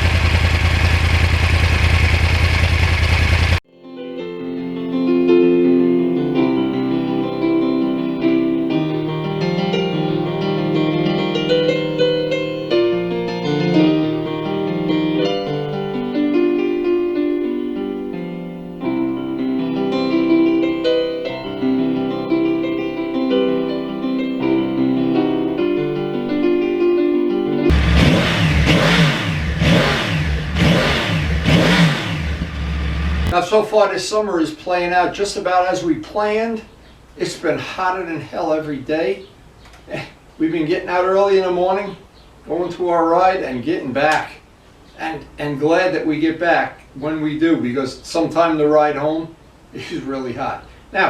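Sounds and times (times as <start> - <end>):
keyboard melody over chords: 3.7 - 31.8.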